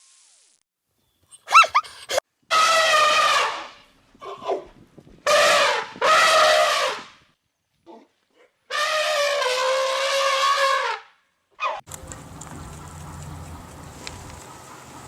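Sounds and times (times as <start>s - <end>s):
low steady hum: 11.9s - 15.0s.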